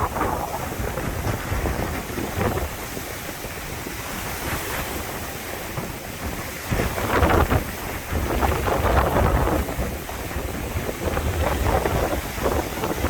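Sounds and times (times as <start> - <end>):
wind gusting on microphone: 0.0 - 13.0.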